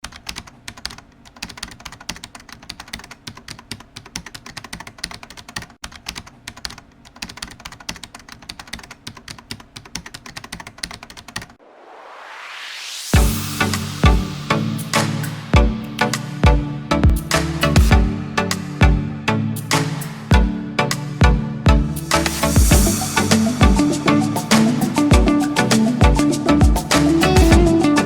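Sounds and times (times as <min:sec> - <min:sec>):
rapid irregular clicking: 0:00.0 - 0:11.6
rising whoosh: 0:11.6 - 0:15.6
music: 0:13.1 - 0:28.0.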